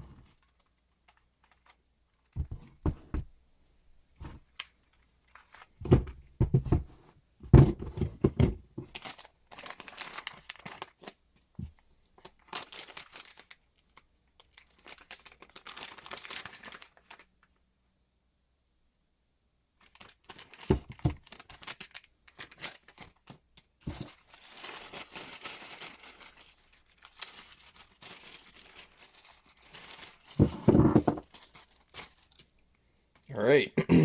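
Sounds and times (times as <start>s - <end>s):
crinkling and rustling: 0.0s - 3.4s, 4.1s - 17.6s, 19.8s - 33.3s
knocks and thumps of handling: 2.4s - 3.3s, 4.2s - 4.4s, 5.8s - 9.0s, 23.9s - 24.1s, 30.4s - 31.3s.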